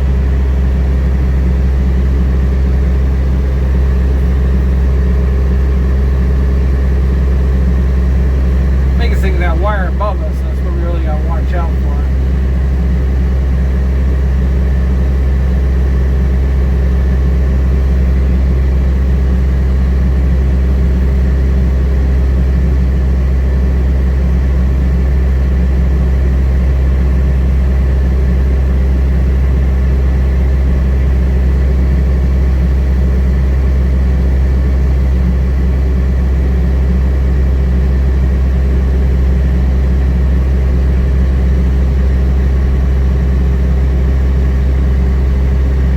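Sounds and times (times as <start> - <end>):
diesel engine humming: 0.0 - 19.3.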